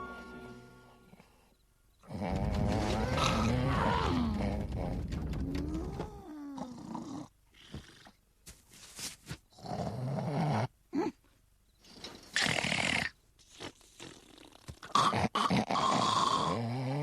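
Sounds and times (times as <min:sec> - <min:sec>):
man snoring cartoonishly: 0:02.0 - 0:04.6, 0:09.6 - 0:10.7, 0:12.4 - 0:17.0.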